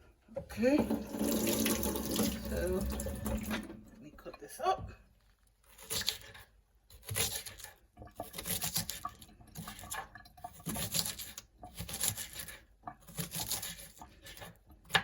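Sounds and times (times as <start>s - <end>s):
knife cutting onion on board: 5.7s - 15.0s.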